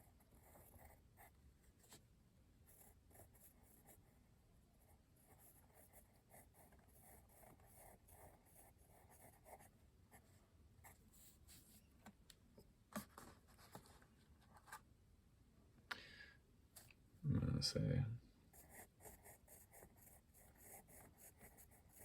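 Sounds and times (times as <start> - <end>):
pencil scratching on paper: 0.0 - 2.0, 2.7 - 4.1, 4.8 - 11.8, 18.5 - 22.0.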